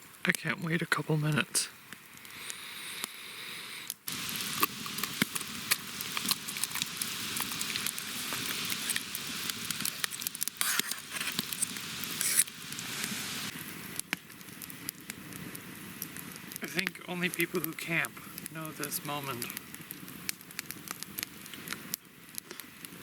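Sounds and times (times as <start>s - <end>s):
fat popping and crackling: 0.0s - 23.0s
food sizzling in frying pan: 4.1s - 13.9s.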